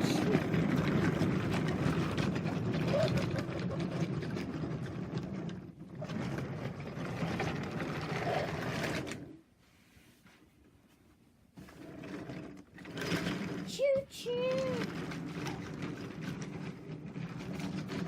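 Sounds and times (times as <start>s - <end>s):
wheels rattling over wood: 0.0s - 9.4s, 11.6s - 18.0s
toy train motor whirring: 12.4s - 18.0s.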